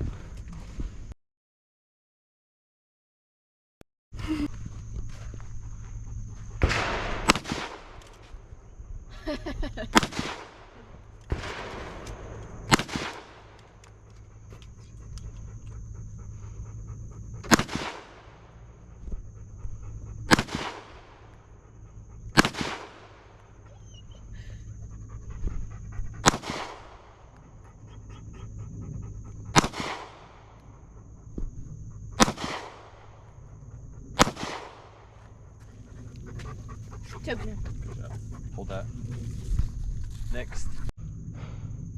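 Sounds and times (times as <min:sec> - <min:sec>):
gunshots with echo: 0:06.6 - 0:08.0, 0:09.9 - 0:13.6, 0:17.4 - 0:18.4, 0:20.3 - 0:21.2, 0:22.3 - 0:23.3, 0:26.2 - 0:27.1, 0:29.5 - 0:30.5, 0:32.2 - 0:33.1, 0:34.2 - 0:35.0
dog panting: 0:13.5 - 0:32.2, 0:35.1 - 0:40.9.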